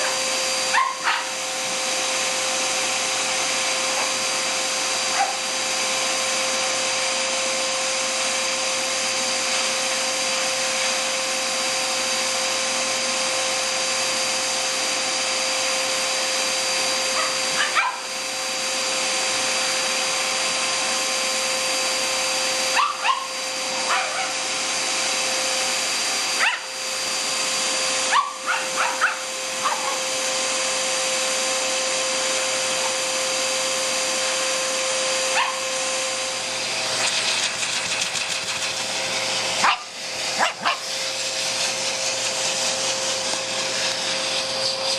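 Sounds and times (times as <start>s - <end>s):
dog barking: 0.0s - 1.4s, 5.1s - 5.4s, 17.1s - 18.1s, 22.7s - 24.4s, 26.4s - 26.7s, 28.1s - 30.0s, 35.3s - 35.6s, 39.6s - 40.9s
vacuum cleaner running: 0.0s - 44.9s.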